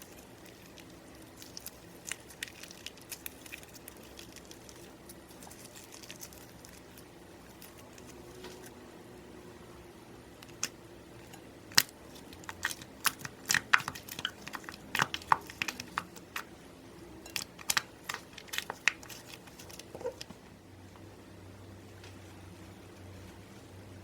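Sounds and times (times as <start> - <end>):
slime crackling and popping: 0.0 - 8.7, 10.4 - 16.5, 17.2 - 20.4.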